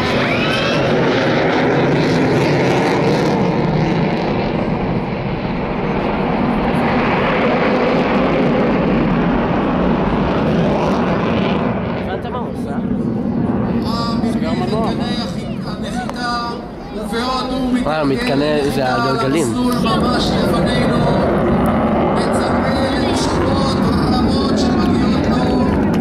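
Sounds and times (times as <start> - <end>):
jet roar flying past: 0.0 - 26.0.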